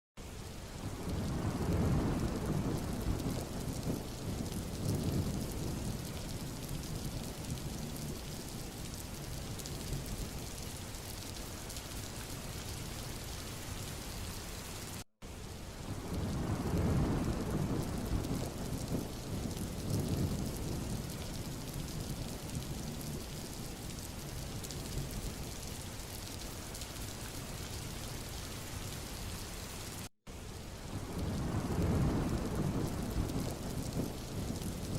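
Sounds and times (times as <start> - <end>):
steady rain: 0.2 - 34.9
rolling thunder: 0.8 - 10.1, 15.9 - 24.0, 31.0 - 34.9.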